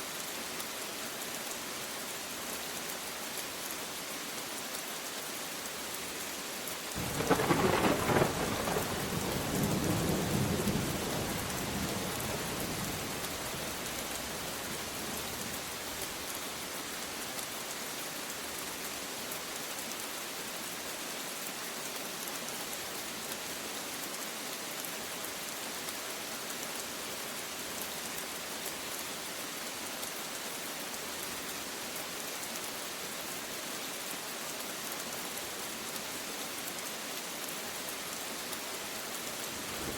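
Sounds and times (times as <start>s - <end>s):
steady rain: 0.0s - 39.9s
thunderclap rolling into rumble: 7.0s - 12.2s.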